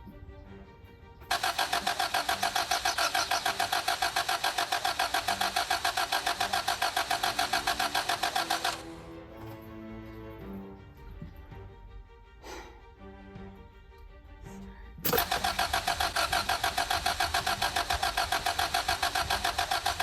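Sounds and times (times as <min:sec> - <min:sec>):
car engine cranking on starter: 0:01.2 - 0:09.2, 0:15.0 - 0:20.0.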